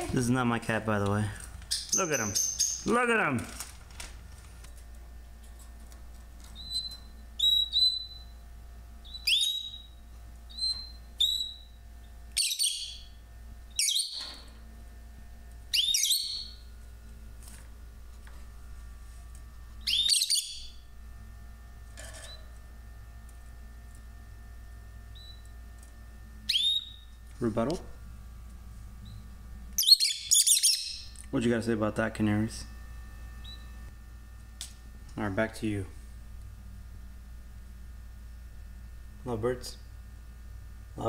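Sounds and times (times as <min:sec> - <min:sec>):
lovebirds shrill calls: 0:01.7 - 0:02.9, 0:06.6 - 0:08.3, 0:09.0 - 0:11.7, 0:12.4 - 0:14.4, 0:15.7 - 0:16.6, 0:19.8 - 0:20.8, 0:26.5 - 0:27.0, 0:29.8 - 0:31.1.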